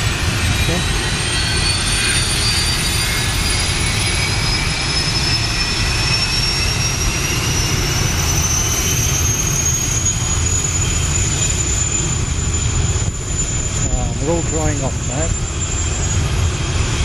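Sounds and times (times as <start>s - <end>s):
jet engines running with whine: 0.0s - 17.0s.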